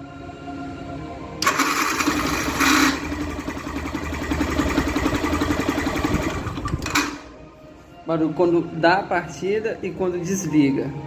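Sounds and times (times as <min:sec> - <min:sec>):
electric starter cranking harshly: 0:01.4 - 0:07.2
motorcycle engine idling: 0:02.0 - 0:06.8.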